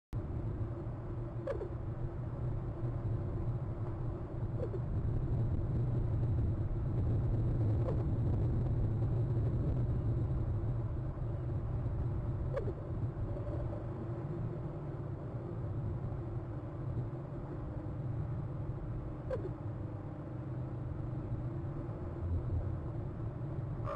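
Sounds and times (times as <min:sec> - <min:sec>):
low rumble of traffic: 0:00.1 - 0:23.9
raven calling: 0:01.4 - 0:01.8.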